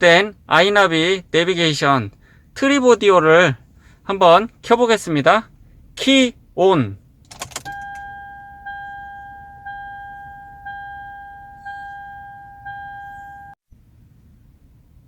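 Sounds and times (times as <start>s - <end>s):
dashboard warning chime: 7.4s - 13.6s.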